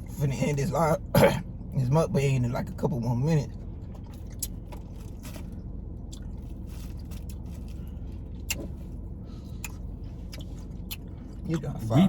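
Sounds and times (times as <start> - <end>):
steady low hum: 0.0 - 12.0
chewing: 9.6 - 11.7.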